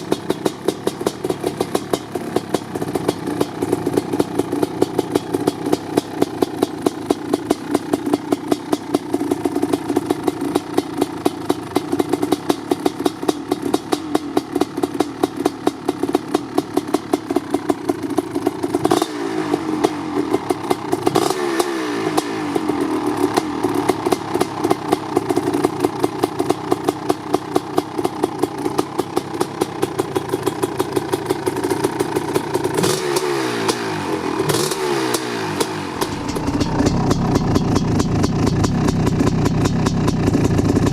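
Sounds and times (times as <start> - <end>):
motorcycle engine idling: 0.0 - 40.9
engine throttle blips: 34.5 - 40.9.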